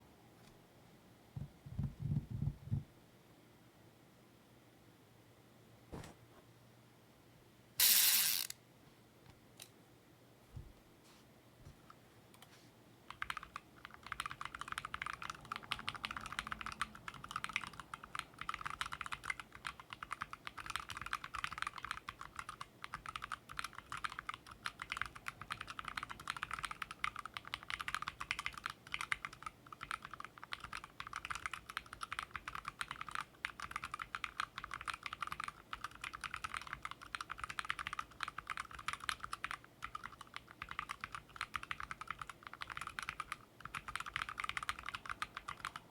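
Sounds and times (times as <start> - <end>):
mechanical keyboard typing: 13.1 - 45.9.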